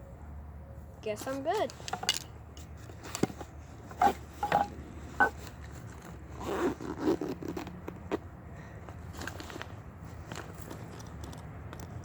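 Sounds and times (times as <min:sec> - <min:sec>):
zipper scraping: 0:03.9 - 0:08.2.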